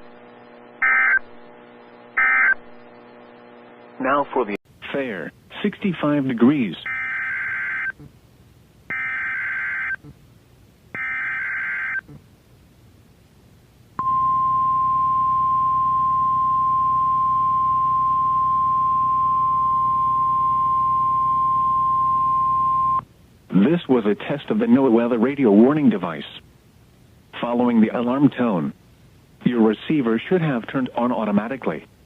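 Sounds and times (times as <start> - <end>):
steady warning alarm tone: 0.8 - 1.2, 8.9 - 10.0, 14.0 - 23.0.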